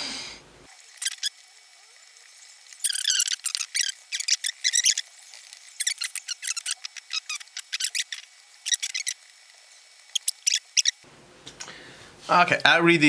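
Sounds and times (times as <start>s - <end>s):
rubber part squeaking: 1.0s - 1.4s, 2.8s - 9.3s, 10.1s - 11.0s.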